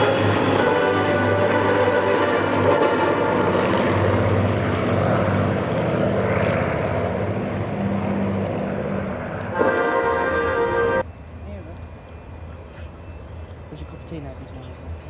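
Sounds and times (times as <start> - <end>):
propeller aircraft droning: 0.0 - 15.0.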